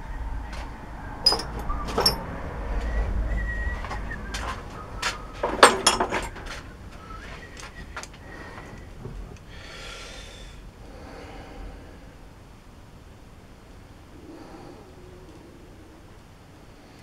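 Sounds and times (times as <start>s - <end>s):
metal scrape: 1.3s - 2.2s
metal tools clinking and rattling: 1.3s - 2.2s, 5.4s - 6.6s.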